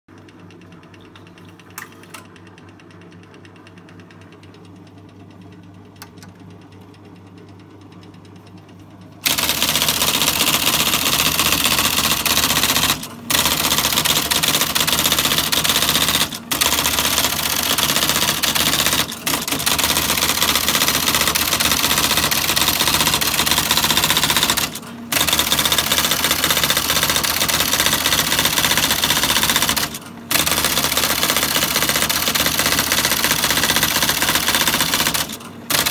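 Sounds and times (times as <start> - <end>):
typewriter motor humming: 9.2 - 35.9
typewriter typing: 9.2 - 35.9.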